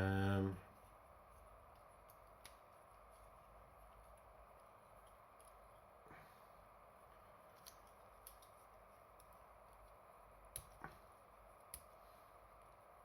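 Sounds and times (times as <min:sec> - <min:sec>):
room hiss: 0:00.0 - 0:13.0
plastic toy legs snapping: 0:10.5 - 0:11.0.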